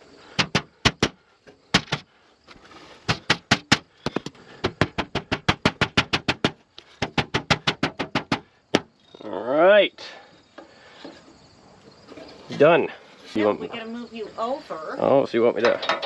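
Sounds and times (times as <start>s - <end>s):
hammer blows: 0.3s - 2.1s.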